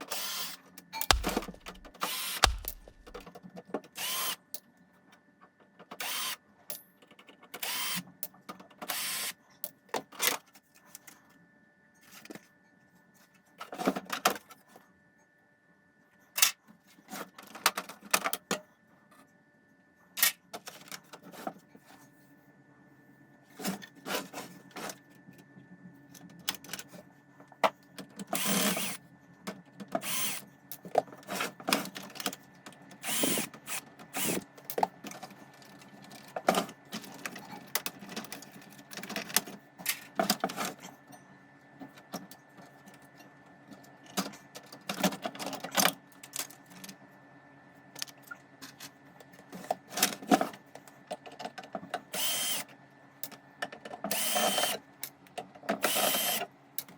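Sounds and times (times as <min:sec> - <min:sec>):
small power tool bursts: 0:01.0 - 0:03.2, 0:33.0 - 0:34.4, 0:52.2 - 0:52.6, 0:54.1 - 0:54.8, 0:55.8 - 0:56.4
clicks and rattles of parts: 0:01.0 - 0:03.3.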